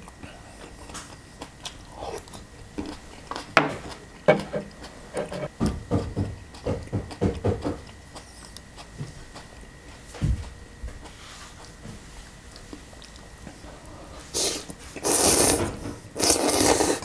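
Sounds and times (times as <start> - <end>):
utensils clacking against bowl: 3.6 - 5.5
wet mouth eating sounds: 14.4 - 17.0.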